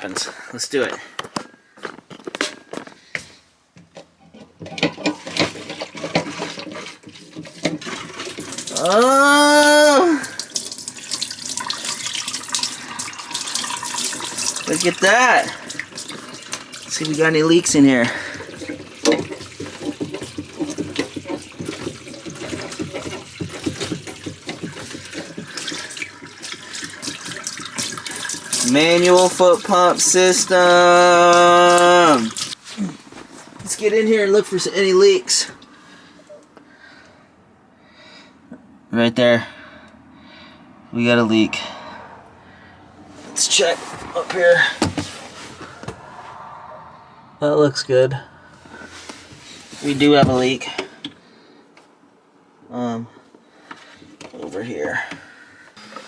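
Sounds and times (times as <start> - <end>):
water gurgling through pipes: 5.2 - 32.6
foot pump strokes: 18.2 - 30.0.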